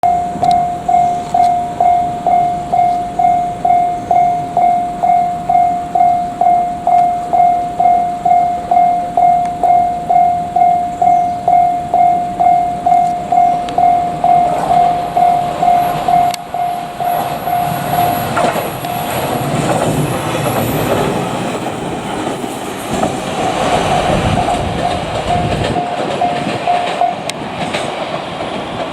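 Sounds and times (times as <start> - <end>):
level crossing bell clanging: 0.0 - 19.8, 24.8 - 27.3
train wheels clacking over rail joints: 4.6 - 28.9.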